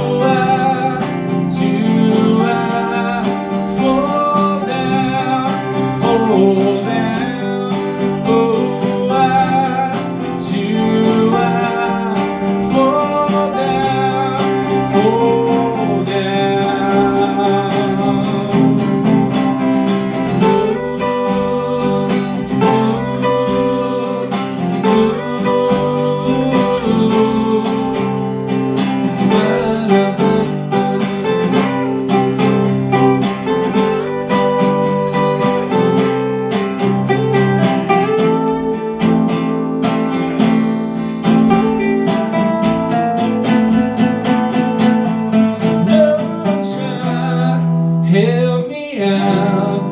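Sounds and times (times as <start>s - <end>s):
guitar melody: 0.0s - 49.9s.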